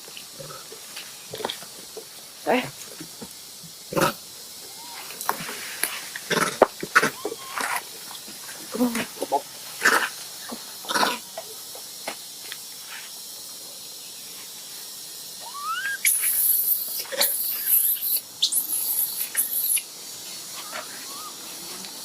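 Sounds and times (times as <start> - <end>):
high hissing noise: 0.0 - 22.0
baby monkey squeaking: 4.7 - 5.0, 7.1 - 7.8, 15.4 - 19.8, 21.1 - 21.3.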